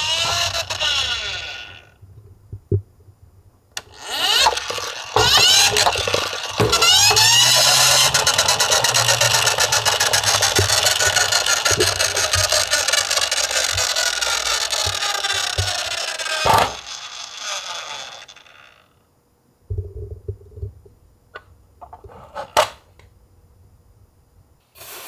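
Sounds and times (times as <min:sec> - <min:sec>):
toy cars rattling down a slope: 0:00.0 - 0:02.0, 0:03.8 - 0:19.0
sharp clatter: 0:03.9 - 0:17.0.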